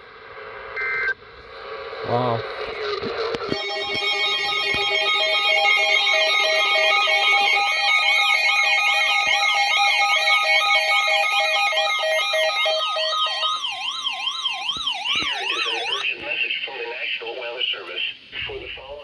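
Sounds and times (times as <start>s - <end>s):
rapid pulsed beeps: 3.5s - 16.0s
warbling alarm tone: 3.5s - 16.0s.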